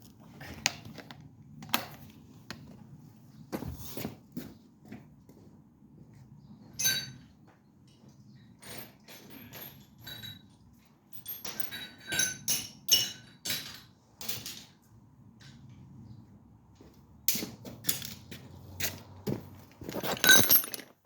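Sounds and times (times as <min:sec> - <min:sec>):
metal hand tools clinking: 0:19.9 - 0:21.0.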